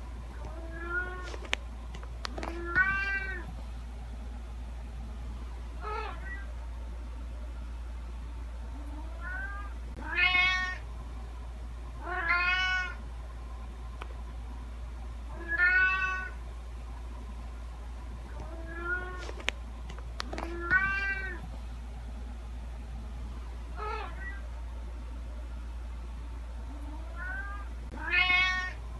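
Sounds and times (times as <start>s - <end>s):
steady low hum: 0.0s - 28.9s
cat meowing: 2.6s - 3.5s, 9.2s - 10.8s, 12.0s - 13.0s, 15.4s - 16.4s, 20.5s - 21.4s, 23.8s - 24.4s, 27.1s - 28.8s.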